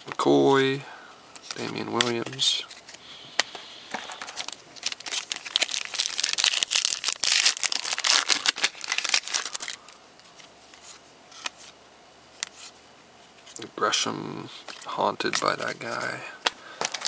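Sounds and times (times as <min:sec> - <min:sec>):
foil wrapper crinkling and tearing: 0:01.5 - 0:10.0, 0:15.4 - 0:17.0.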